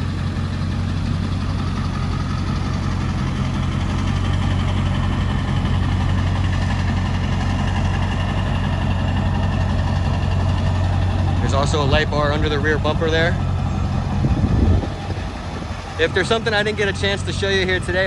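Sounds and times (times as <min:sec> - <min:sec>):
diesel engine idling: 0:00.0 - 0:18.0.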